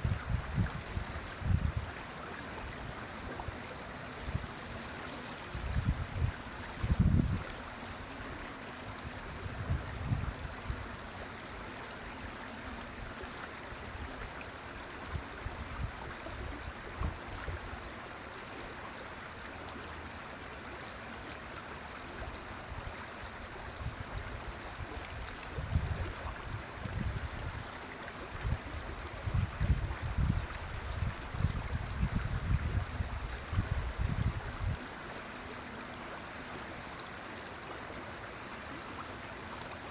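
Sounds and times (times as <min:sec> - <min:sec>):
river water rushing: 0:32.9 - 0:39.9.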